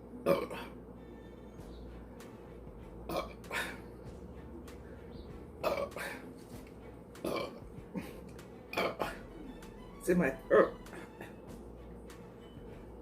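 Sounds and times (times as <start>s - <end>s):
woman burping: 0.2s - 0.8s, 3.1s - 3.8s, 5.6s - 6.2s, 7.2s - 9.2s.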